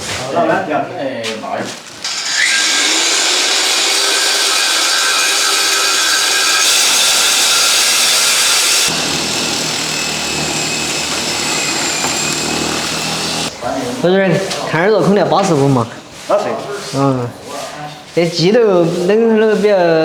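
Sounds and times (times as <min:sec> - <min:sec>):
power tool running under load: 0:02.1 - 0:13.5.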